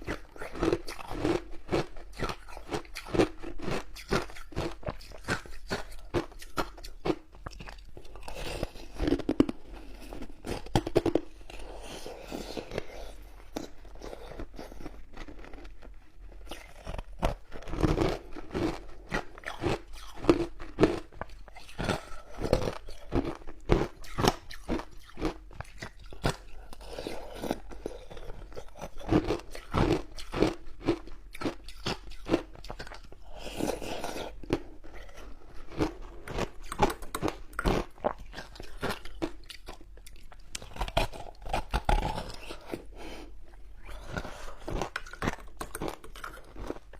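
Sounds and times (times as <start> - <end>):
ice crunching while chewed: 0.0 - 46.9.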